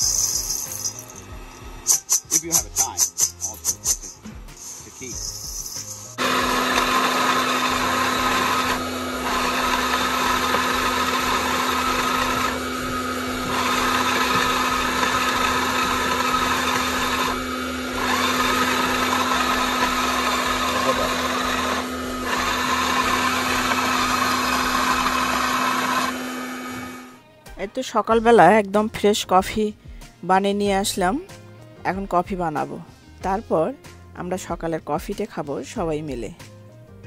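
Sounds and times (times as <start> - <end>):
electric coffee grinder grinding: 0.0 - 27.2.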